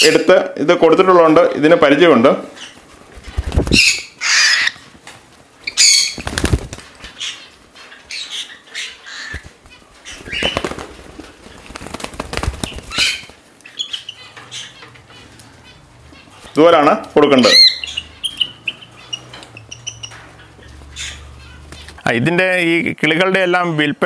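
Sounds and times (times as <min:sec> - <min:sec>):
parrot flapping wings: 0:02.7 - 0:04.2, 0:04.8 - 0:07.2, 0:09.2 - 0:13.5.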